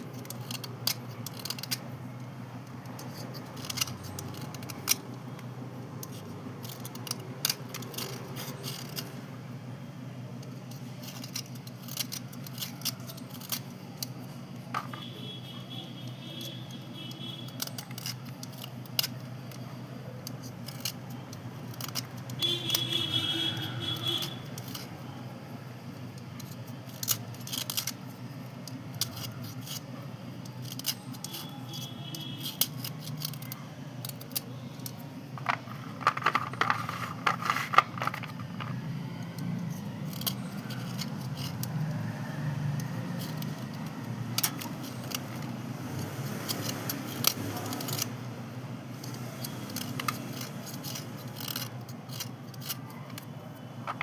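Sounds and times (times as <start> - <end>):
chalk crunching and scraping: 28.9 - 38.8.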